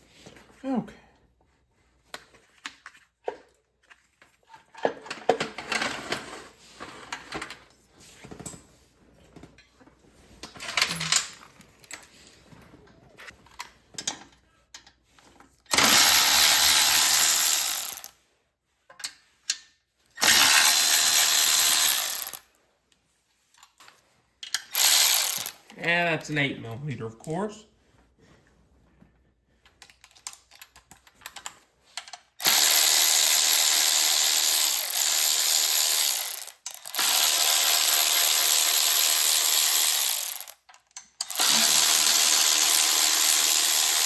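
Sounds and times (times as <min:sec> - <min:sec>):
small electric power tool running: 0:15.7 - 0:18.1, 0:20.2 - 0:22.4, 0:24.7 - 0:25.6, 0:32.4 - 0:40.6, 0:41.2 - 0:44.0.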